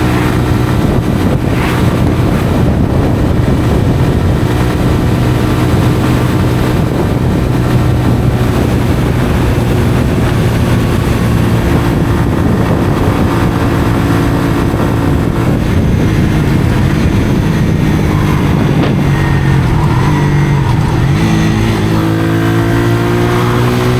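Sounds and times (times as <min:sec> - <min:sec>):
motorcycle engine running: 0:00.0 - 0:23.9.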